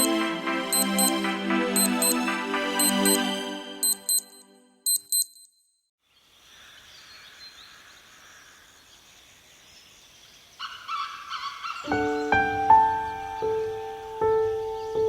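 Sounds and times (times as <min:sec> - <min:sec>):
short high beeps: 0:00.0 - 0:01.2, 0:01.8 - 0:05.6
bright tone melody: 0:00.0 - 0:04.9.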